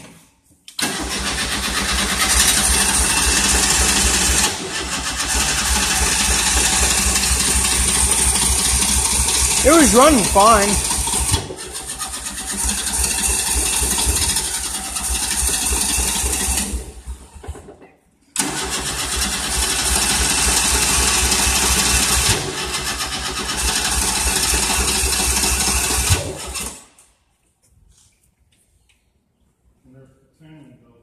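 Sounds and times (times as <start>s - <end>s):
starter cranking engine: 0.8s - 3.3s, 18.4s - 20.1s.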